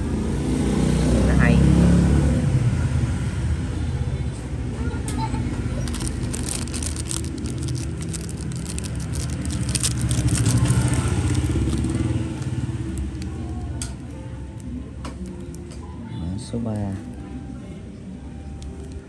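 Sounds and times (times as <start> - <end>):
vehicle engine running: 5.8 - 14.0.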